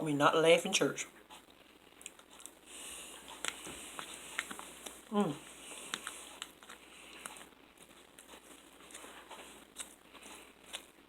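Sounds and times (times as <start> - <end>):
food packaging crinkling: 3.3 - 11.0.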